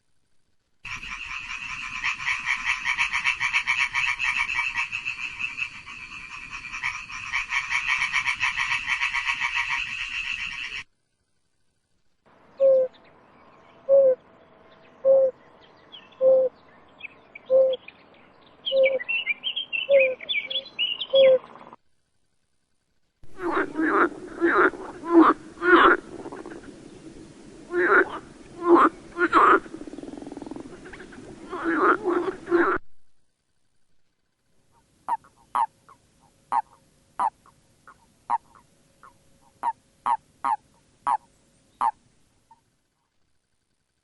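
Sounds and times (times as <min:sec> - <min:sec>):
frog calling: 0:00.8 - 0:10.9, 0:12.5 - 0:13.0, 0:13.8 - 0:14.2, 0:15.0 - 0:16.6, 0:17.4 - 0:17.9, 0:18.6 - 0:21.7, 0:23.2 - 0:27.1, 0:27.7 - 0:32.8, 0:34.7 - 0:42.7
cricket trilling: 0:00.8 - 0:11.7, 0:12.5 - 0:13.0, 0:15.0 - 0:44.0
bird-like chirps: 0:12.5 - 0:21.8.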